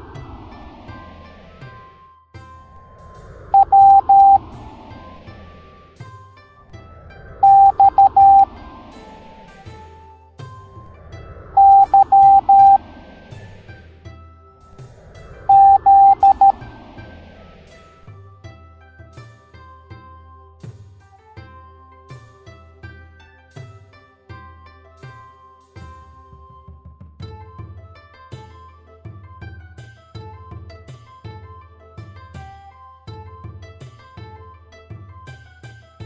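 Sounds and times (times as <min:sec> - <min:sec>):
light background music: 0:00.0 - 0:36.0
morse code beeps: 0:03.6 - 0:04.4, 0:07.4 - 0:08.5, 0:11.6 - 0:12.8, 0:15.5 - 0:16.6.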